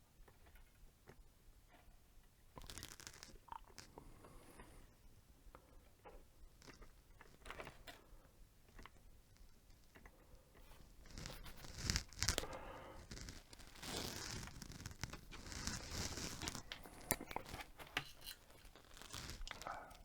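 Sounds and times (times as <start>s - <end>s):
crinkling rustling handling: 10.6s - 20.0s.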